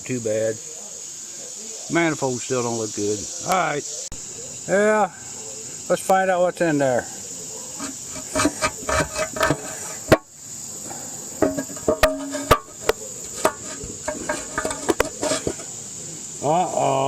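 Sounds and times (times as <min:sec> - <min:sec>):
metal tools clanking on engine: 0:07.8 - 0:10.3, 0:11.4 - 0:15.7.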